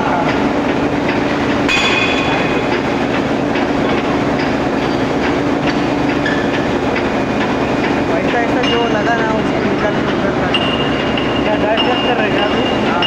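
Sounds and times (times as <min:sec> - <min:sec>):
machinery humming: 0:00.0 - 0:13.0
metallic clanks: 0:01.0 - 0:07.5.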